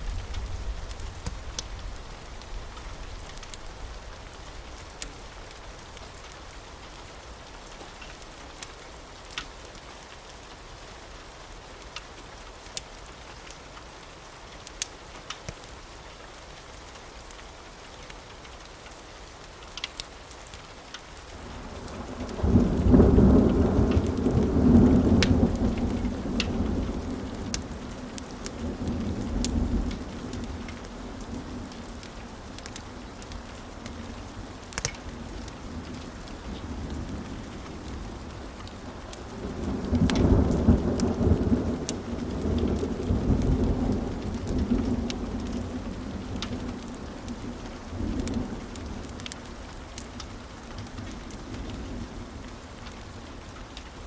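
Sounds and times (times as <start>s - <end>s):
steady rain: 0.0s - 54.0s
thunder rumbling: 21.6s - 49.4s.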